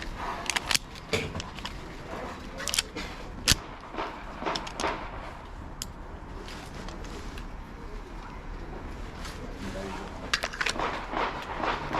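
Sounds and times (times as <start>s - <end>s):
pistol clicks and clacks: 0.0s - 1.8s, 2.6s - 5.2s, 10.3s - 11.9s.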